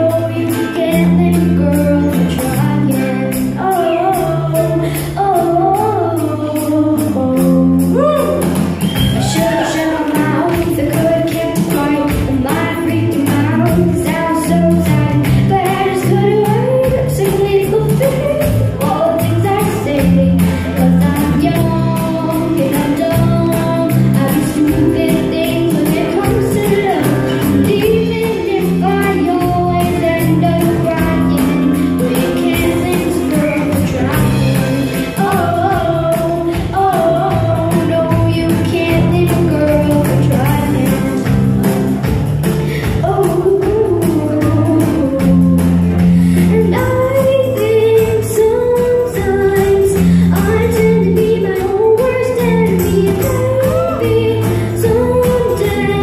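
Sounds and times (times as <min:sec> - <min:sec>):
instrumental accompaniment with beat: 0:00.0 - 0:56.0
woman singing pop song: 0:00.0 - 0:56.0.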